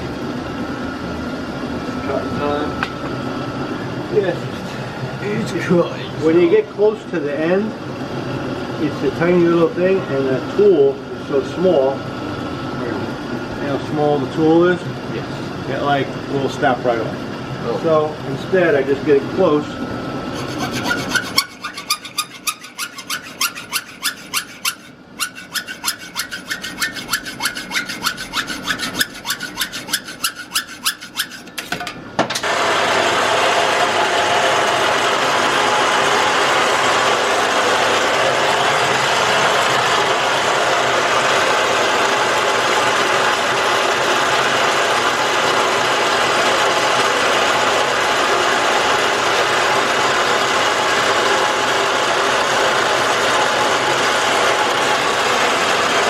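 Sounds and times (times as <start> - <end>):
grinding noise: 20.3 - 31.9
metal rasping strokes: 20.3 - 31.9.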